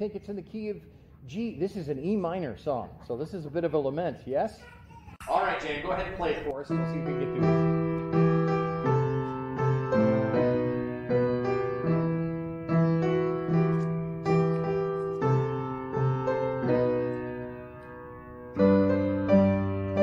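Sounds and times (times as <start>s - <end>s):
piano playing slow hymn chords: 6.6s - 20.0s.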